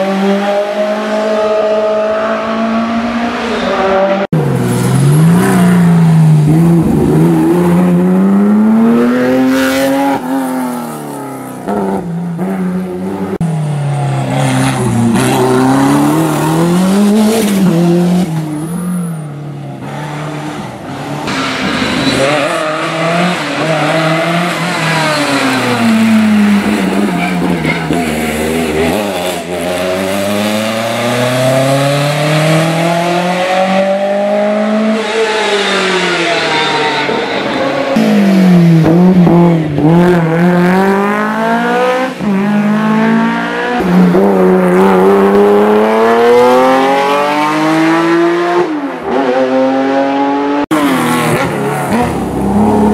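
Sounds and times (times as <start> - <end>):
rally car engines revving: 0.0 - 52.9.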